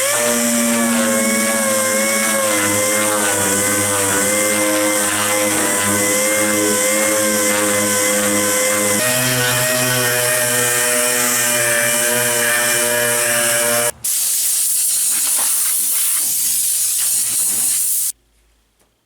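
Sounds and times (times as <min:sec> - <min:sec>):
machine motor humming: 0:00.0 - 0:13.9
strong hiss: 0:13.9 - 0:18.1.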